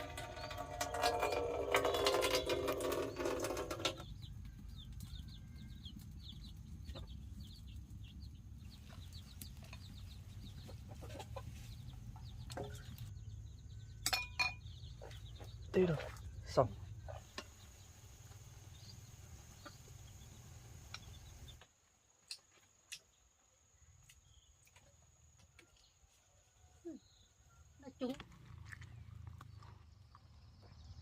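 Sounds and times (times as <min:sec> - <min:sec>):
chicks peeping: 0:03.8 - 0:14.0, 0:14.7 - 0:17.8, 0:18.8 - 0:21.6.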